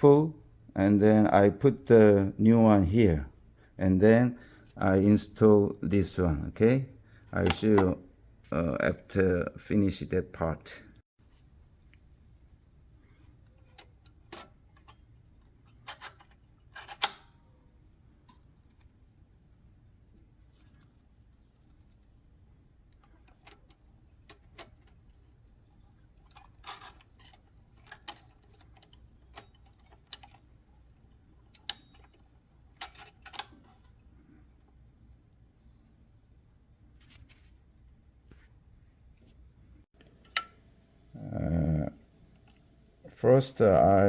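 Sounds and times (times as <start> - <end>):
typewriter parts clicking: 15.8 - 17.3, 26.2 - 30.4, 32.8 - 33.6.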